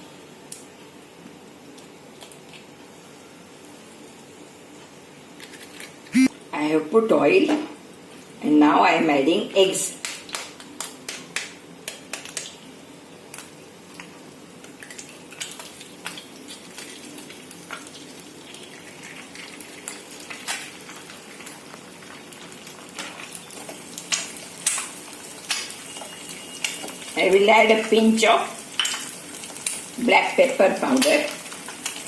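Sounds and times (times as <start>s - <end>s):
eggs sizzling in oil: 9.9s - 32.0s.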